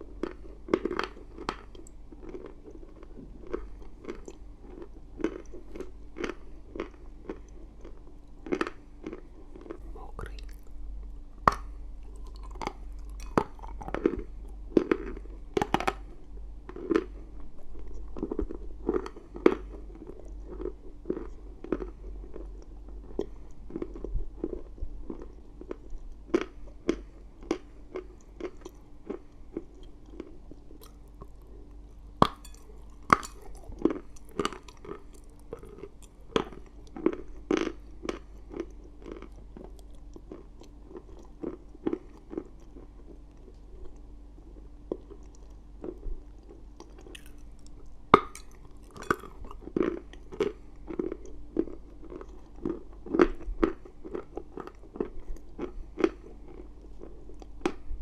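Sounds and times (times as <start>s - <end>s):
chalk being crunched and chewed: 28.2s - 57.8s.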